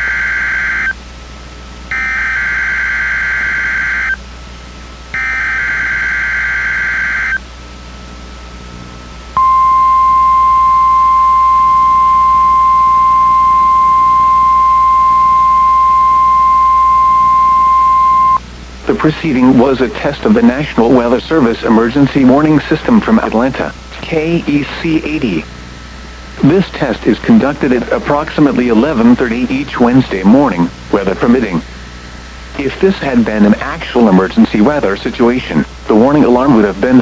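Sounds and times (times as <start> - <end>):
steady warning alarm tone: 0.0 - 1.0, 1.9 - 4.2, 5.1 - 7.5, 9.4 - 18.4
buzzy digital header bursts: 5.2 - 7.4.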